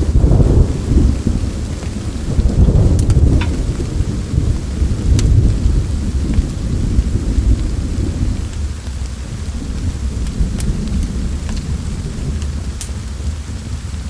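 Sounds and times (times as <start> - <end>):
rain: 0.0 - 14.0
thunder rumbling: 0.0 - 14.0
wood fire crackling: 0.0 - 14.0
fire pops: 1.8 - 4.0, 12.4 - 13.4.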